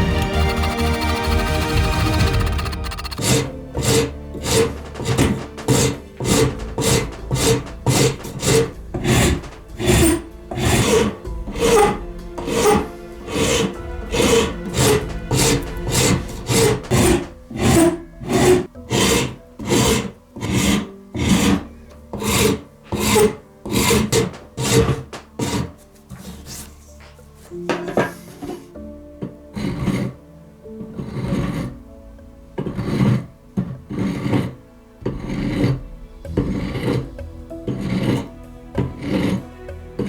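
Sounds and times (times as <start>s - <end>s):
hand sanding strokes: 0.0s - 21.6s, 22.2s - 26.9s, 37.7s - 39.4s.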